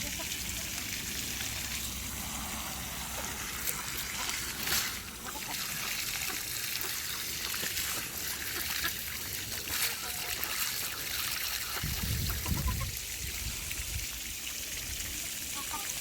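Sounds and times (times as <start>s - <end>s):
water running from a hose: 0.0s - 16.0s
water splashes: 0.0s - 16.0s.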